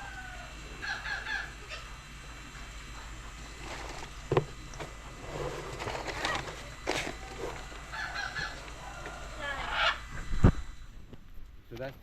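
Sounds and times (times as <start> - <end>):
fowl calling: 0.0 - 2.0, 7.5 - 10.3.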